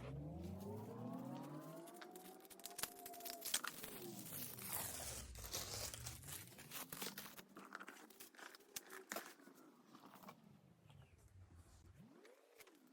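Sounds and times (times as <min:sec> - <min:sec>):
paper packaging crinkling: 0:01.8 - 0:10.3.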